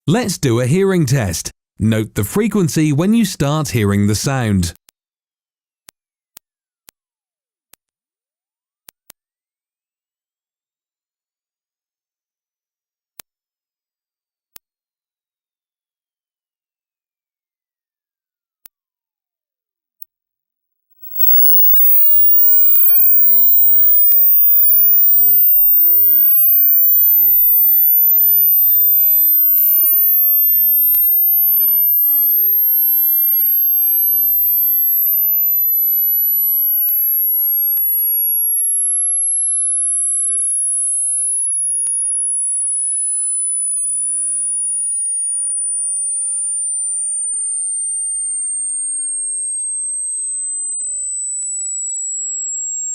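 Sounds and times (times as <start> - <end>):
high pure sine tone: 21.0 - 48.4.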